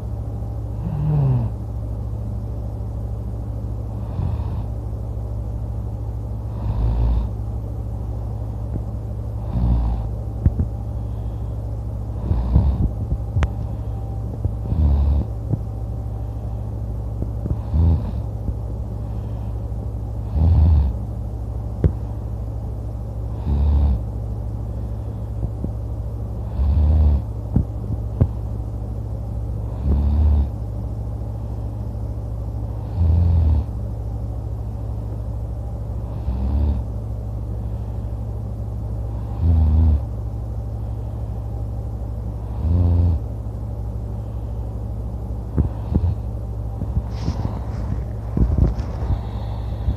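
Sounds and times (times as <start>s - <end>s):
steady low hum: 0.0s - 49.9s
person snoring: 0.8s - 1.6s, 4.0s - 4.7s, 6.5s - 7.3s, 9.4s - 10.1s, 12.1s - 12.9s, 14.6s - 15.3s, 17.5s - 18.2s, 20.2s - 21.0s, 26.4s - 27.3s.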